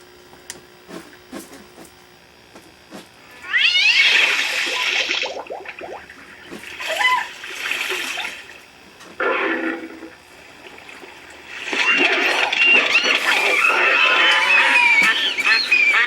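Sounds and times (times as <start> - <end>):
water splashing: 4.6 - 8.6
animal chirps and squeaks: 12.6 - 16.0.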